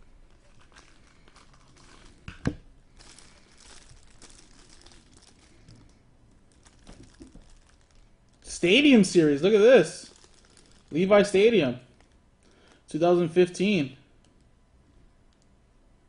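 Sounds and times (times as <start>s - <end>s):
packaging crinkling and tearing: 0.0s - 9.4s, 10.0s - 12.9s.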